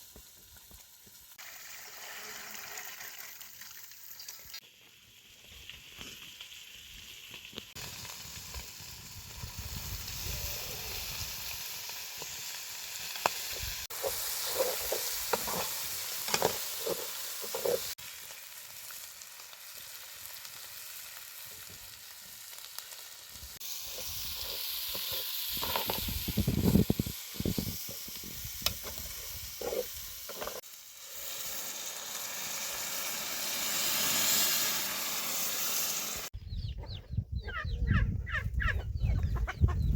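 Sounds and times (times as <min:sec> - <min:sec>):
food sizzling in a pan: 0:00.0 - 0:36.4
utensil scraping a pan: 0:13.9 - 0:18.0.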